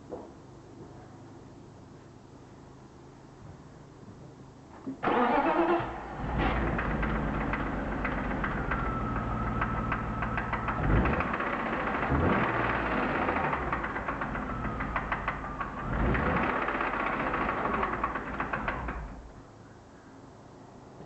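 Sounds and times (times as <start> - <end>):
car engine starting and idling: 4.9 - 19.4
engine ticking knock: 6.4 - 19.2.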